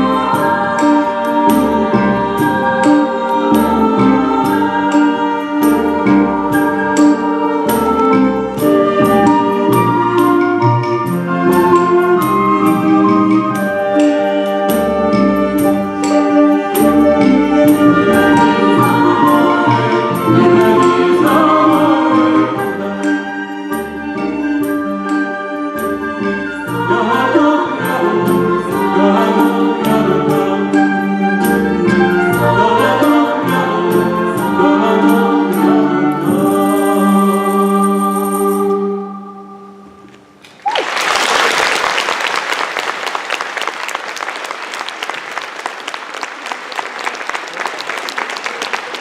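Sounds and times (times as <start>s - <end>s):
orchestra and choir playing: 0.0s - 40.4s
audience applauding: 40.4s - 49.0s.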